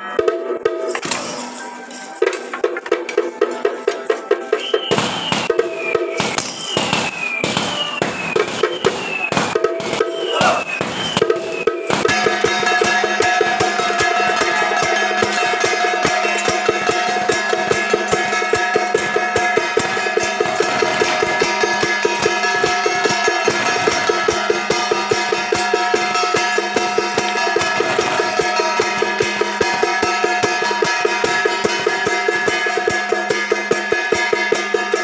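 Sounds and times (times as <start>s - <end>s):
fast sharp percussion strikes: 0.1s - 35.0s.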